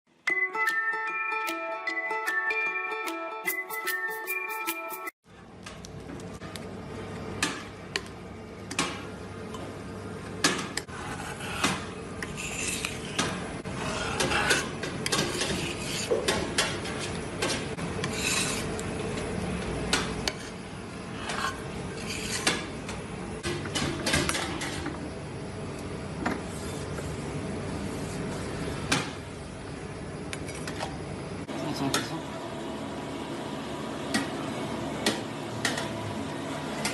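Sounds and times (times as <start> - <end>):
metal utensils scraping ice cream: 10.9 - 16.1, 18.0 - 18.9, 21.2 - 22.7.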